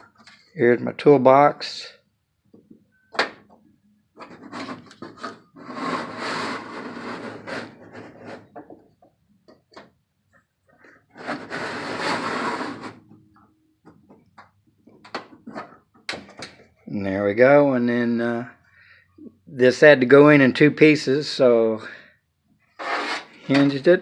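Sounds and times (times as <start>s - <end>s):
things rubbing and scraping: 4.2s - 8.8s, 10.7s - 13.2s, 14.8s - 16.0s, 22.7s - 24.0s.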